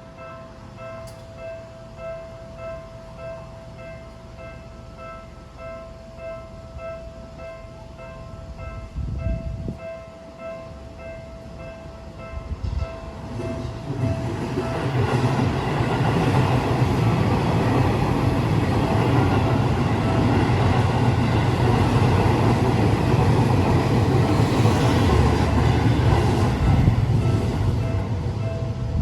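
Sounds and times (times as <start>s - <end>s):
train wheels rumbling on rails: 11.1s - 29.0s.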